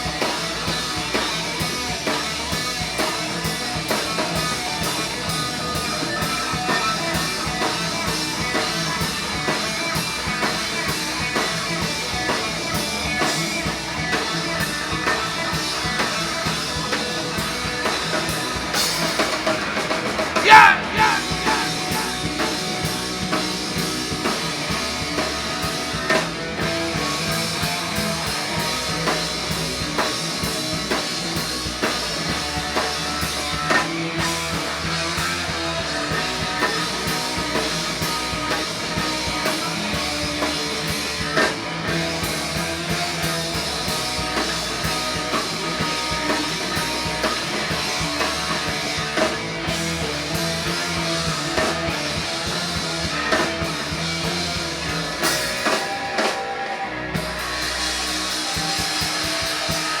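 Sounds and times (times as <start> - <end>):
drum kit beat: 0.0 - 60.0
rock guitar: 0.0 - 60.0.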